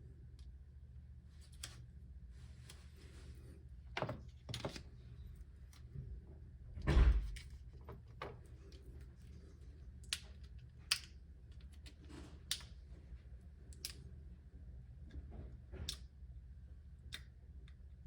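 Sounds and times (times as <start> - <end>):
sharp clicks of small parts: 10.0 - 11.9.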